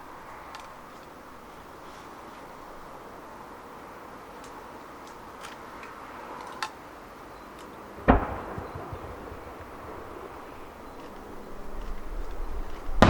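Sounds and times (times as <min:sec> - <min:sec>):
firework bang: 0:08.0 - 0:11.3
low rumbling echo: 0:08.0 - 0:13.0.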